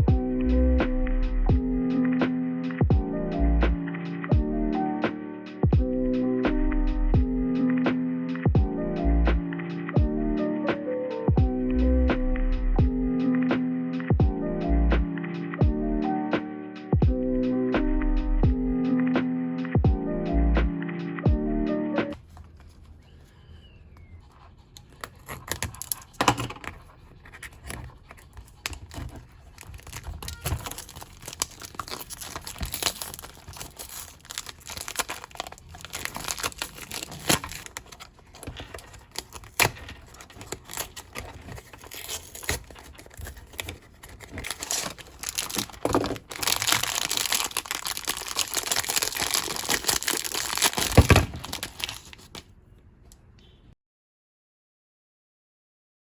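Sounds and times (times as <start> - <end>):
packaging crinkling and tearing: 24.8 - 52.5.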